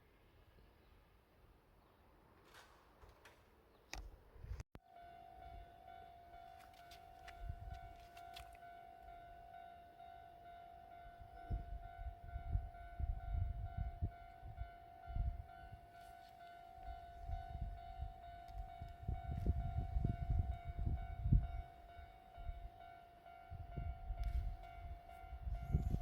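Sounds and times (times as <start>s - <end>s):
level crossing alarm ringing: 4.9s - 26.0s
train passing rumbling: 8.6s - 26.0s.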